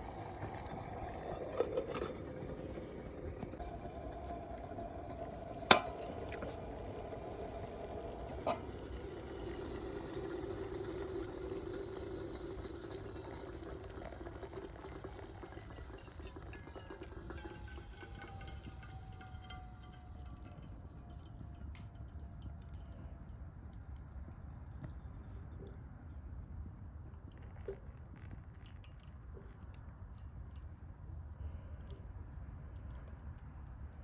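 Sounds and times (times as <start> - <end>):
wood fire crackling: 0.0 - 23.1
water simmering in kettle: 0.0 - 34.0.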